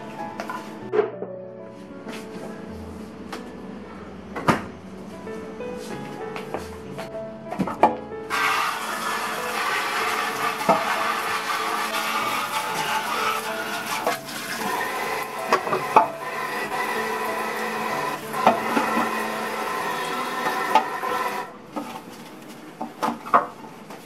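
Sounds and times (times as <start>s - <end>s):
running water: 8.3s - 21.5s.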